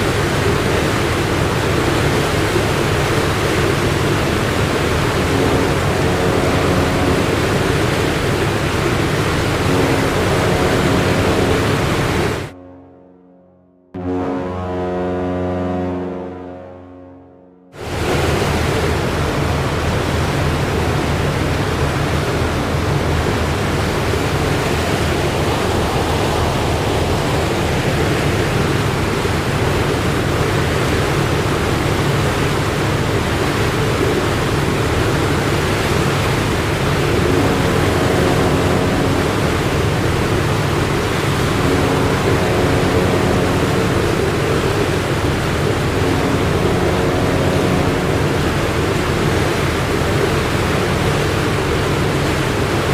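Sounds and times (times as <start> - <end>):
wind and water rushing: 0.0 - 12.5, 17.8 - 52.9
faint steady tones: 0.0 - 16.7, 32.8 - 52.9
ship engine drone: 0.0 - 52.9.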